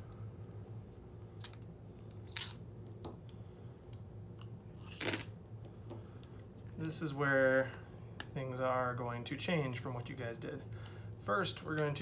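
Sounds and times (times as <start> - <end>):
steady low hum: 0.0 - 12.0
small parts clicking and scraping: 4.8 - 5.3.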